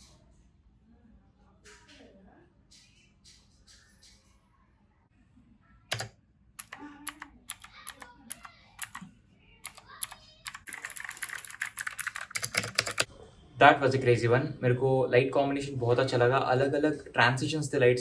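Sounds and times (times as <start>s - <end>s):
mechanical keyboard typing: 5.9s - 9.0s, 9.6s - 13.1s.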